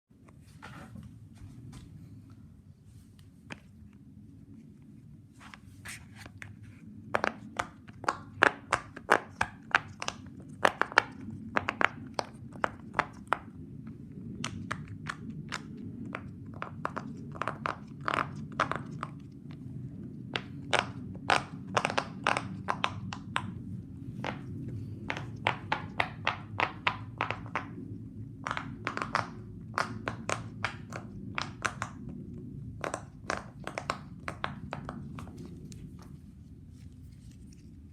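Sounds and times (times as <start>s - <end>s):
low steady hum: 0.1s - 37.9s
fidget toys clicking and popping: 20.3s - 23.6s, 25.1s - 32.2s.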